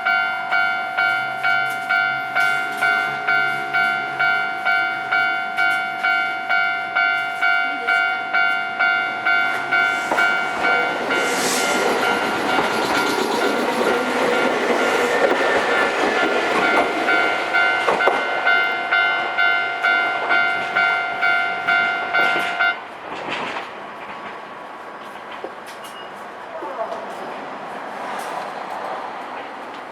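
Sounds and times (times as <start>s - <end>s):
level crossing bell dinging: 0.0s - 11.3s, 16.2s - 22.8s
train passing: 0.0s - 29.9s.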